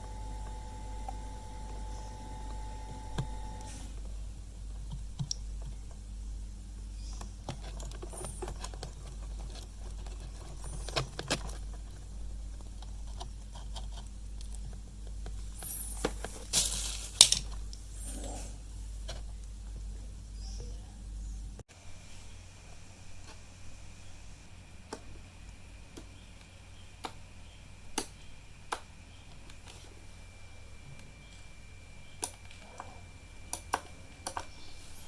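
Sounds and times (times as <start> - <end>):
steady low hum: 0.0 - 35.0
small tools clicking and scraping: 7.0 - 18.4.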